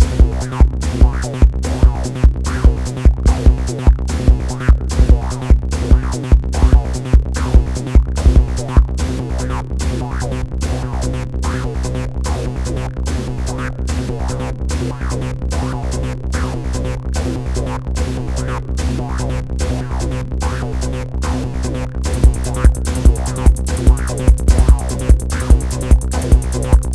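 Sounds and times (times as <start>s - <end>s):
heavy kick drum: 0.0s - 9.0s, 22.2s - 26.9s
electronic techno music: 22.1s - 26.9s.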